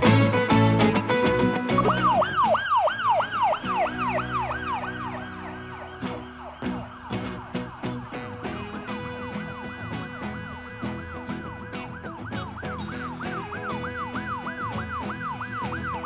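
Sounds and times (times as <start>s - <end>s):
background music: 0.0s - 11.1s
siren-like yelp: 0.0s - 16.0s.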